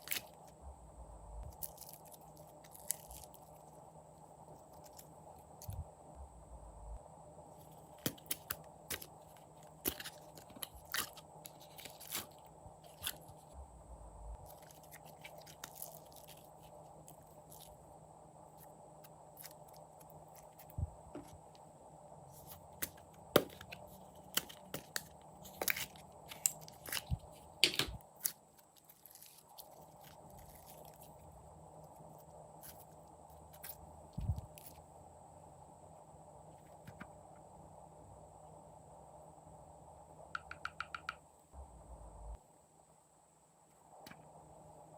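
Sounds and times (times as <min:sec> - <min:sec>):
faint steady hum: 0:00.0 - 0:44.9.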